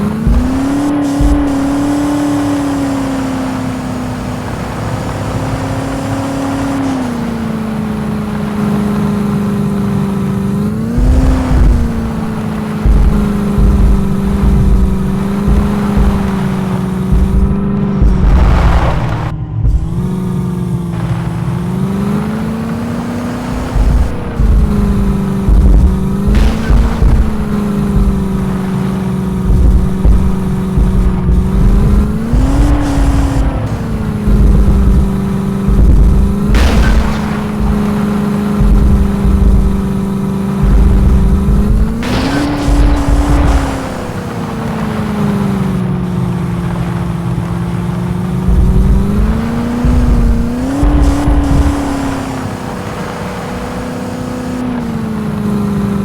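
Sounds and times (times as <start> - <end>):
low rumbling thuds: 0.0 - 2.7, 10.7 - 22.2, 23.2 - 53.1
car engine revving: 0.0 - 56.0.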